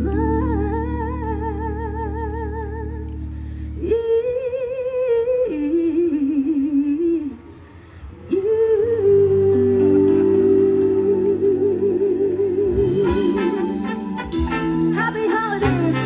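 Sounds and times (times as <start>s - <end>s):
live band chord: 12.7s - 16.0s.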